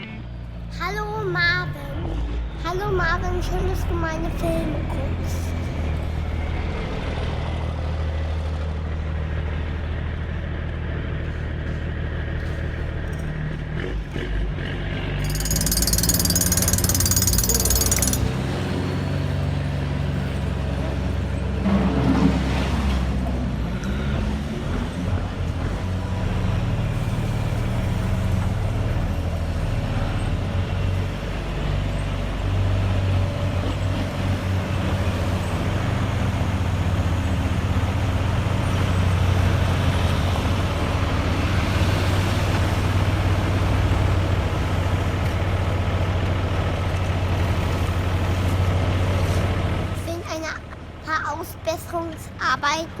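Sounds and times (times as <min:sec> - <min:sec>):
model truck engine running: 0:02.7 - 0:21.5
clatter: 0:11.3 - 0:18.4.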